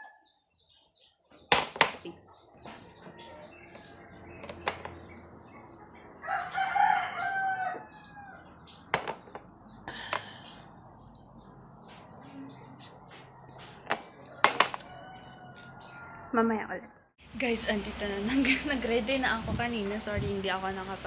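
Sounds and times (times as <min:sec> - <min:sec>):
rooster crowing: 0:00.0 - 0:00.3, 0:06.2 - 0:08.7, 0:14.2 - 0:17.1
sharp knocks: 0:01.5 - 0:02.1, 0:13.1 - 0:14.8.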